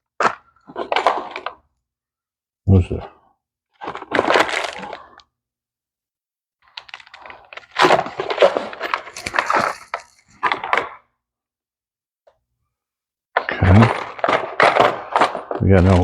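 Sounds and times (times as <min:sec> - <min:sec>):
packaging crinkling and rustling: 0:03.8 - 0:05.2, 0:06.7 - 0:11.0.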